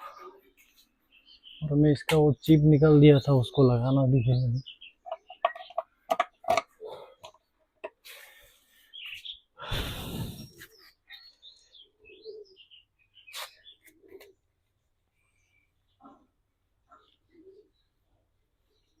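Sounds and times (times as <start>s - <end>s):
small birds chirping: 0.0s - 19.0s
hand tools clicking and knocking: 5.0s - 8.0s.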